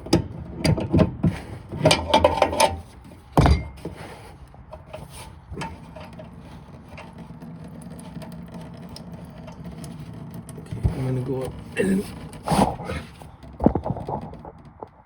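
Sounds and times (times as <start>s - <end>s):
drain valve clicks and knocks: 5.6s - 12.4s.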